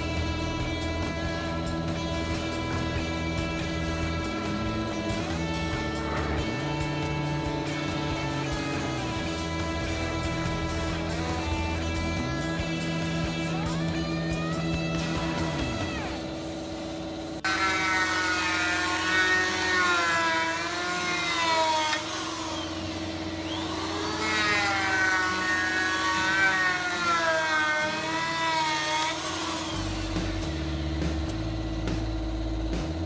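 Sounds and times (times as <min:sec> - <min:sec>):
background music with bass line: 0:00.0 - 0:16.4, 0:23.0 - 0:33.0
electric saw cutting wood: 0:00.0 - 0:32.8.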